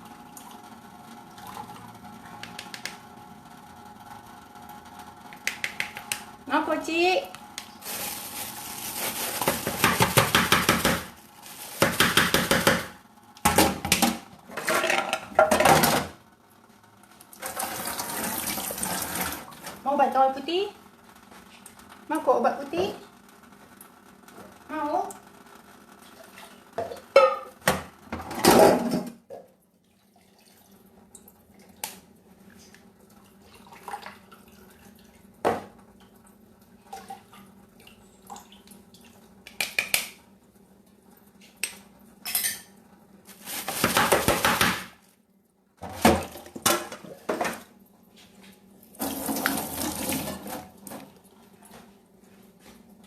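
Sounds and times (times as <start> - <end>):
bowls and utensils clinking: 26.8 - 27.6.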